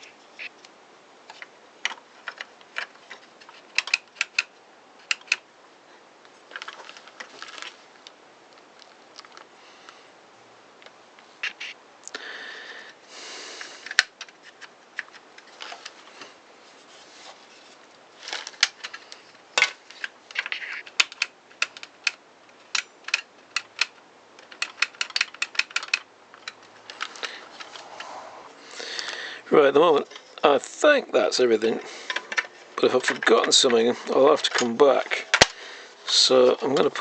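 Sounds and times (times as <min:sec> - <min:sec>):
saw parts clicking and tapping: 0:01.3 - 0:05.4, 0:19.6 - 0:27.8, 0:32.0 - 0:35.6.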